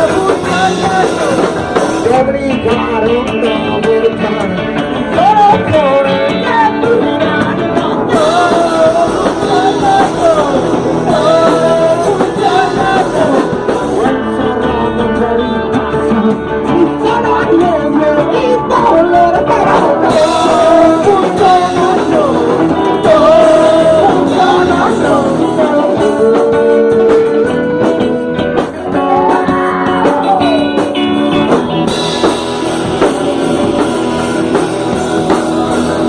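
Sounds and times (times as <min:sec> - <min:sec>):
person singing: 0:00.0 - 0:36.0
rock band playing: 0:00.0 - 0:36.0.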